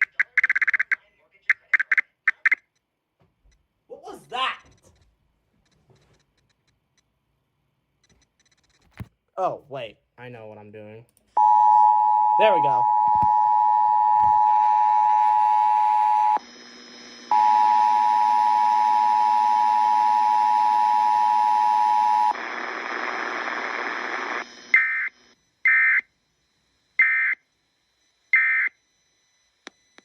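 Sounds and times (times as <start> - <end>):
digital data tone bursts: 0.0 - 2.7.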